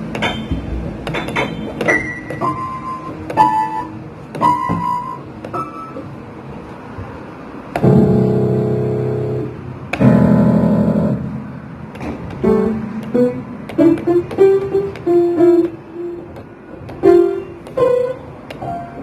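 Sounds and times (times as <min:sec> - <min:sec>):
toy piano notes: 0:01.3 - 0:06.0, 0:12.4 - 0:19.0.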